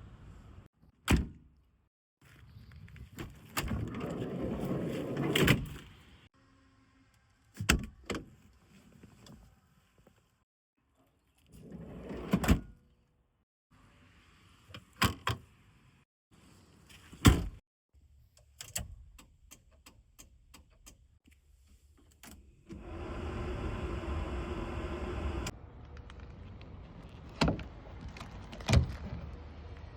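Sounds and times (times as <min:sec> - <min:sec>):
low hum: 0:22.8 - 0:27.0.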